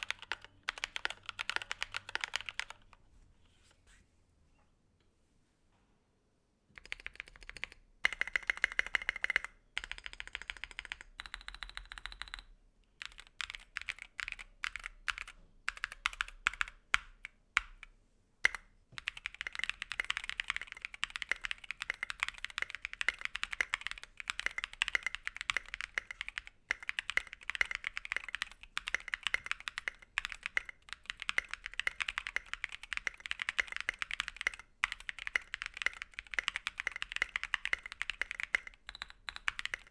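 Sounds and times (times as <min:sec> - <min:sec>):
mechanical keyboard typing: 0:00.0 - 0:03.0, 0:06.8 - 0:39.9.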